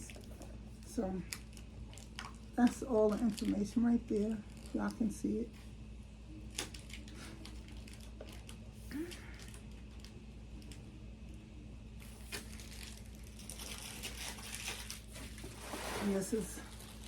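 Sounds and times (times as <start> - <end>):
low steady hum: 0.0 - 17.0
packaging rustling and clicking: 6.5 - 10.8, 12.3 - 15.8.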